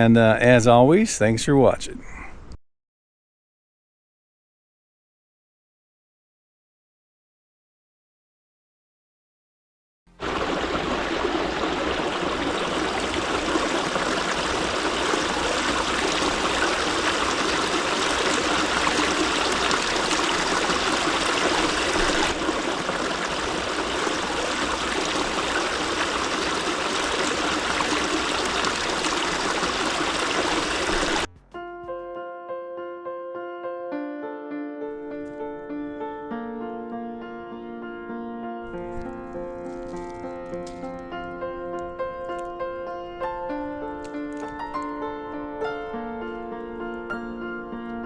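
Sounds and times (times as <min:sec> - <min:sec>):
stream running: 0:10.1 - 0:31.3, 0:38.9 - 0:40.9
quiet piano music: 0:31.3 - 0:48.0.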